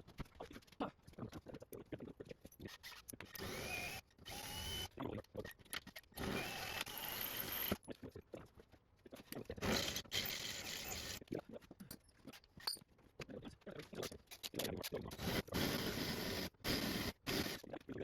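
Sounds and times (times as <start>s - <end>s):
power drill running: 3.4s - 4.9s, 6.2s - 7.8s, 15.2s - 17.6s.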